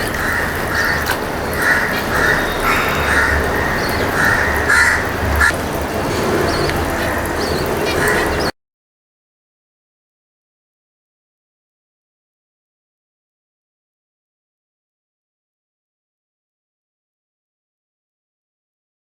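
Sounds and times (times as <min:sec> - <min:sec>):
crow cawing: 0:00.0 - 0:08.5.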